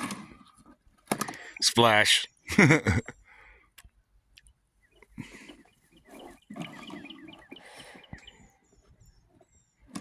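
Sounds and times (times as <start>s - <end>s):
small bird chirping: 4.4s - 9.9s.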